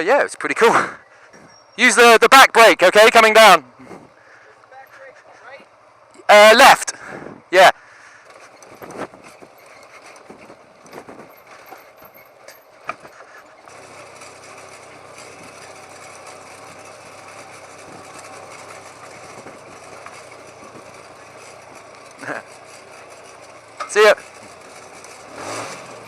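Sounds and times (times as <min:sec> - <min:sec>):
road and wind noise: 0:00.0 - 0:26.0
motorcycle engine at low revs: 0:08.2 - 0:26.0.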